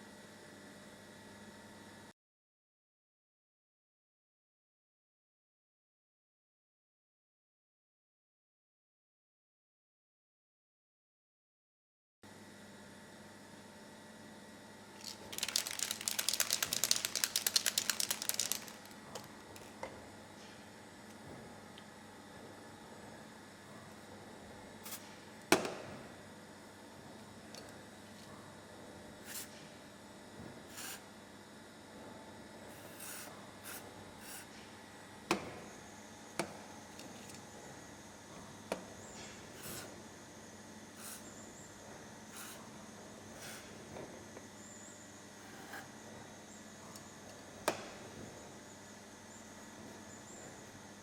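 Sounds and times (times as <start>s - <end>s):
sharp rattling clicks: 15.0s - 19.3s.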